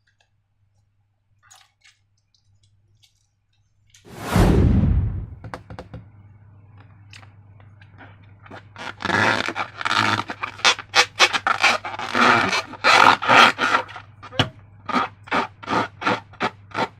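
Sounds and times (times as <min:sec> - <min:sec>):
low steady hum: 0:03.7 - 0:08.7.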